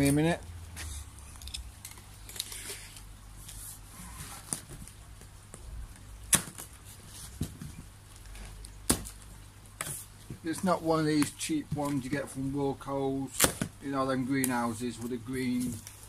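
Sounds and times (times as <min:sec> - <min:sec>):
cardboard rustling: 0:02.2 - 0:05.6, 0:06.4 - 0:09.2, 0:14.9 - 0:16.0.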